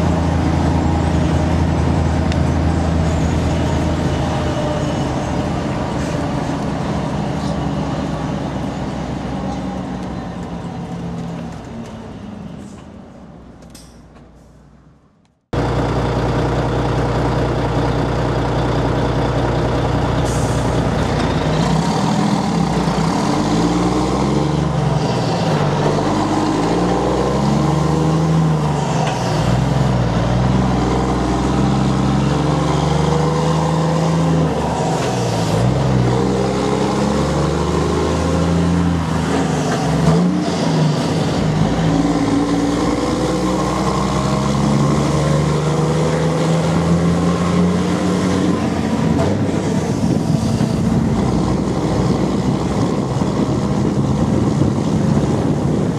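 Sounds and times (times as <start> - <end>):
diesel truck engine revving: 0.0 - 11.0, 15.6 - 55.9.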